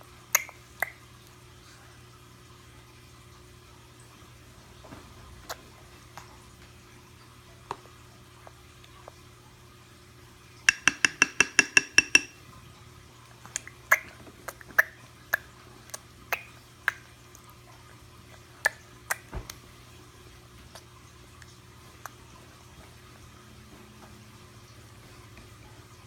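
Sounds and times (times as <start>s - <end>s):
sharp pitched clicks: 10.7s - 12.4s.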